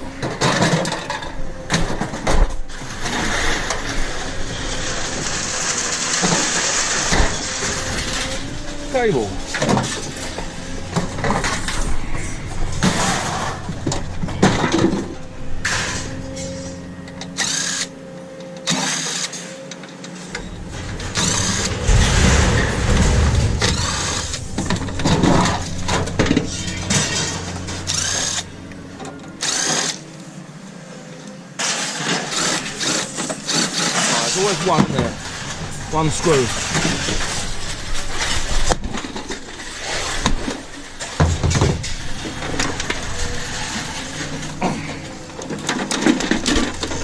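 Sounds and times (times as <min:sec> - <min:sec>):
scrap metal clanking and scraping: 0:00.0 - 0:18.0, 0:18.7 - 0:47.0
heavy low rumble: 0:07.2 - 0:17.2, 0:20.4 - 0:29.5.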